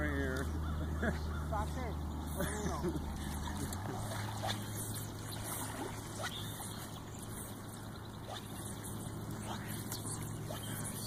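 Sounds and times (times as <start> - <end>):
boat motor humming: 0.0 - 11.0
water trickling: 2.4 - 11.0.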